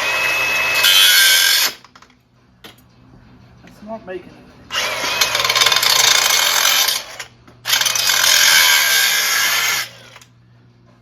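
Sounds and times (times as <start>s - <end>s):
angle grinder cutting steel: 0.0s - 1.8s, 4.7s - 10.2s.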